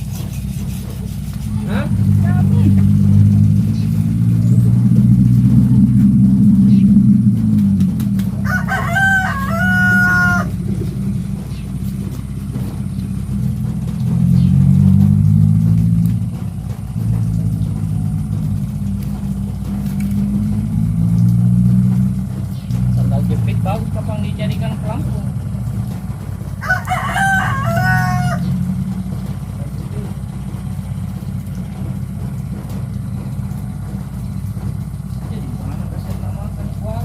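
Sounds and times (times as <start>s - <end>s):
low engine drone: 0.0s - 37.0s
rooster crowing: 8.3s - 11.5s, 26.5s - 29.4s.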